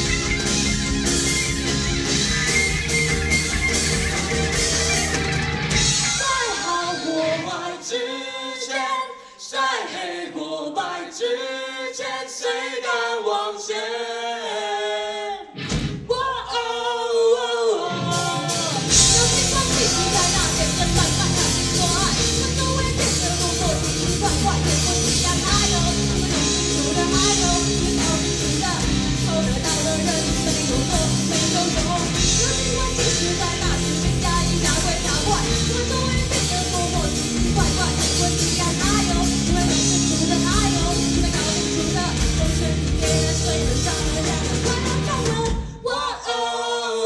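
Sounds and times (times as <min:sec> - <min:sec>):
live rock band playing: 0:00.0 - 0:07.0, 0:18.1 - 0:45.6
person singing: 0:16.2 - 0:47.0.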